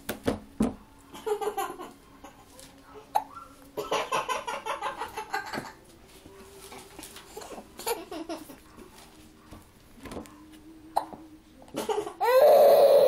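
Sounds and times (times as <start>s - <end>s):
rhythmic laughter: 1.1s - 5.9s, 7.3s - 8.8s.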